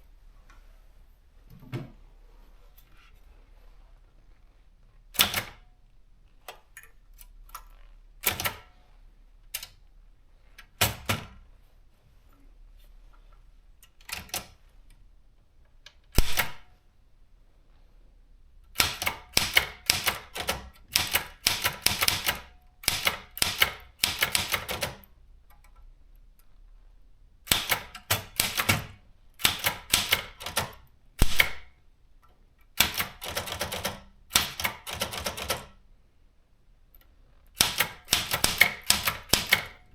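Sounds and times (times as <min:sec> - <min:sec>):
typewriter keystrokes: 0:05.2 - 0:05.7, 0:08.2 - 0:08.7, 0:10.7 - 0:11.4, 0:14.0 - 0:14.6, 0:16.1 - 0:16.7, 0:18.7 - 0:25.8, 0:27.4 - 0:31.8, 0:32.7 - 0:35.8, 0:37.5 - 0:39.9.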